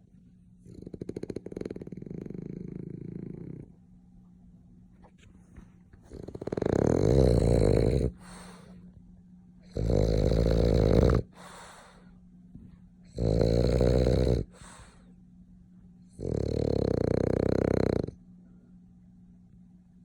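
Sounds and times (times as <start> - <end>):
dog snoring: 0.6 - 3.8, 6.0 - 8.8, 9.6 - 12.2, 13.1 - 15.1, 16.1 - 18.2.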